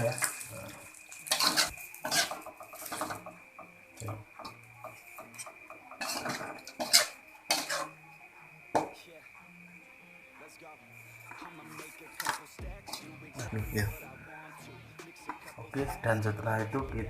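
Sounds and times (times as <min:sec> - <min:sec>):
spatula scraping frying pan: 0:00.0 - 0:03.4, 0:04.4 - 0:08.0.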